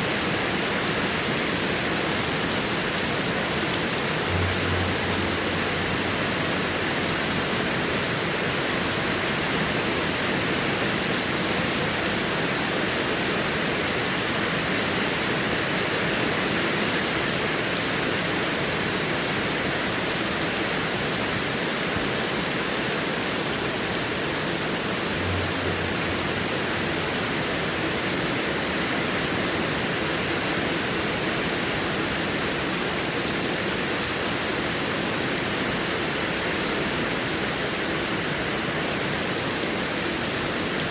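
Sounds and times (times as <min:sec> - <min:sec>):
heavy rain falling: 0:00.0 - 0:40.9
low rumble: 0:04.2 - 0:08.2, 0:25.2 - 0:28.1.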